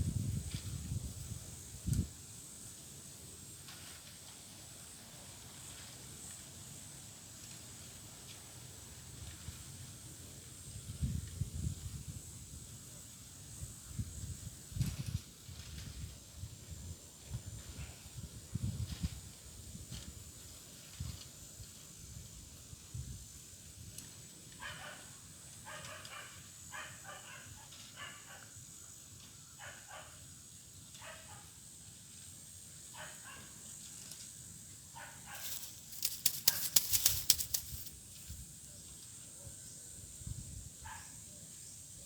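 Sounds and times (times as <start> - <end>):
loud sharp clicks: 35.4 - 37.9.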